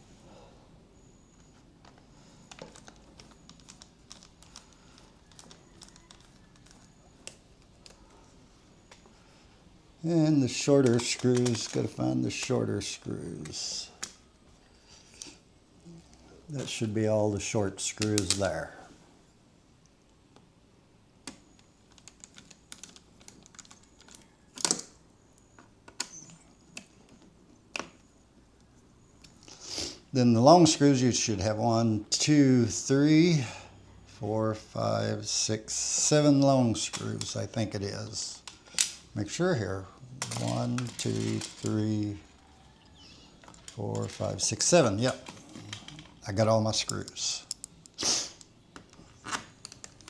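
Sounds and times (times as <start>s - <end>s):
screws clattering: 40.2s - 42.1s.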